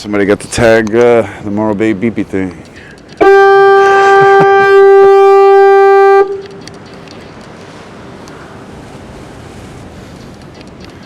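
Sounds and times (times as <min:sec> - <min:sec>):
surf: 0:00.0 - 0:11.0
wind: 0:00.0 - 0:11.0
fog horn blasting: 0:03.2 - 0:06.6.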